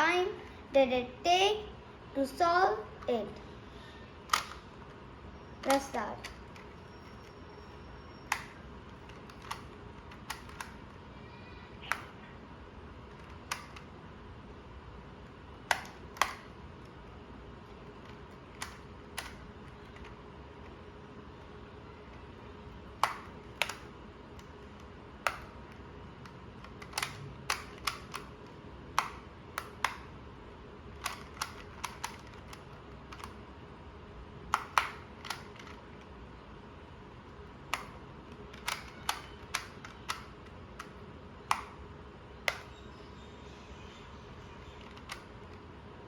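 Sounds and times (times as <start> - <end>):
puzzle clicking: 4.2 - 5.0, 5.6 - 11.1, 13.0 - 14.0, 15.3 - 20.8, 21.4 - 30.1, 30.9 - 33.4, 34.4 - 36.2, 37.3 - 42.8, 44.3 - 45.7.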